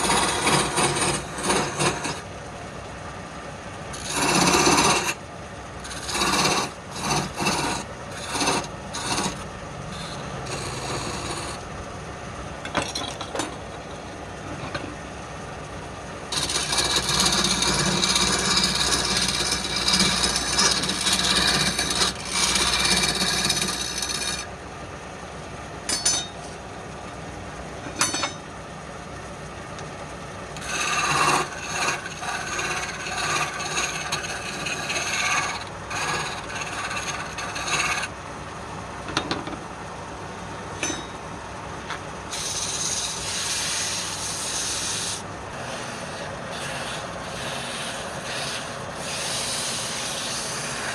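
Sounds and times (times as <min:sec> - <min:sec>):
abrasive tool scraping wood: 0:00.0 - 0:02.2, 0:04.0 - 0:05.2, 0:05.8 - 0:11.6, 0:16.3 - 0:24.5, 0:30.6 - 0:38.1, 0:42.3 - 0:50.9.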